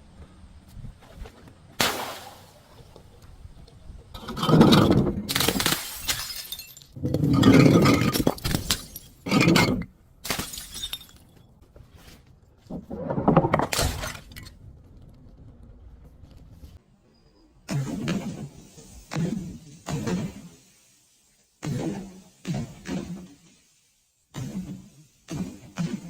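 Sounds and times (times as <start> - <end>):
glass shattering: 4.4 - 11.4.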